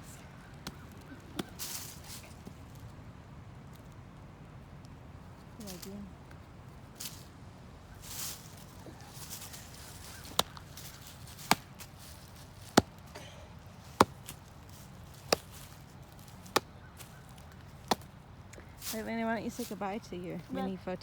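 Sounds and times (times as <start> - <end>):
chopping knocks on wood: 17.9 - 18.1.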